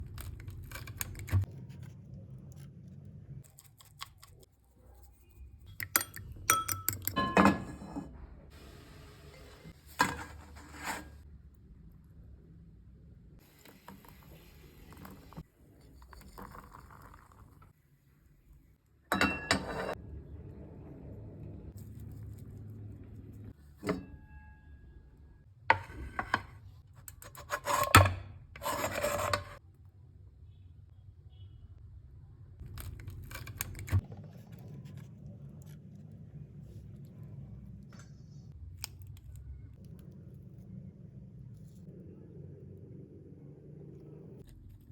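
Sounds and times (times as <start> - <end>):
kitchenware clinking and knocking: 6.0 - 8.1, 19.1 - 20.0
utensil scraping: 10.0 - 11.2, 27.2 - 29.6.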